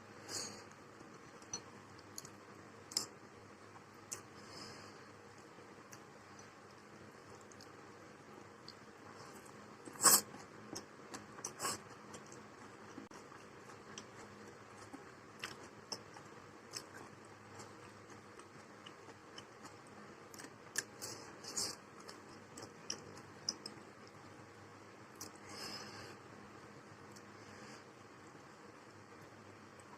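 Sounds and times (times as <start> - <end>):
faint chewing: 3.8 - 24.4.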